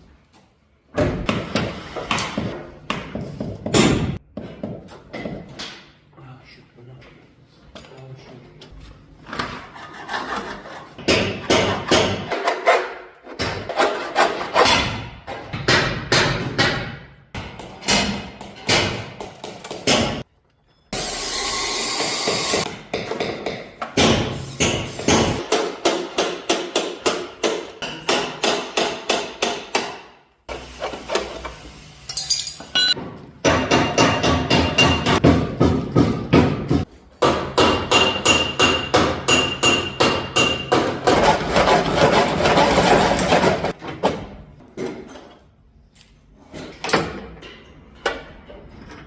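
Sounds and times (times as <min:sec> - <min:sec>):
hammer striking sheet metal: 0:11.0 - 0:13.8, 0:22.5 - 0:30.2, 0:33.4 - 0:41.5.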